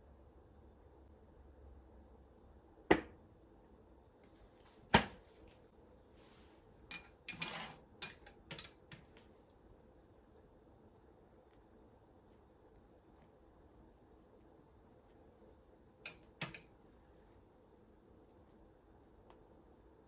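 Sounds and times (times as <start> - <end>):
kitchen items knocking: 16.1 - 16.6.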